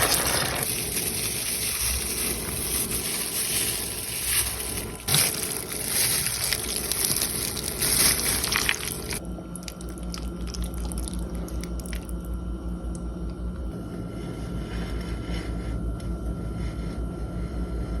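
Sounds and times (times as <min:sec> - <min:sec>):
food squishing in a pan: 0:00.0 - 0:12.2
steady low hum: 0:00.0 - 0:18.0.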